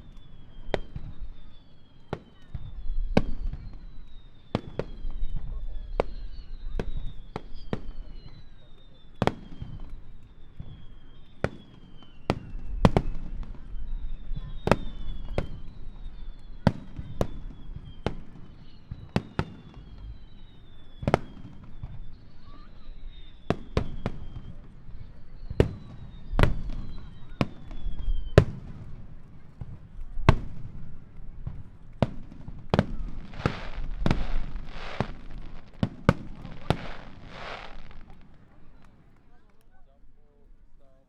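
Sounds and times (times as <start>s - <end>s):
falling firework whistles: 0.0s - 28.8s, 32.0s - 39.1s
firework shell bursts: 32.9s - 38.5s.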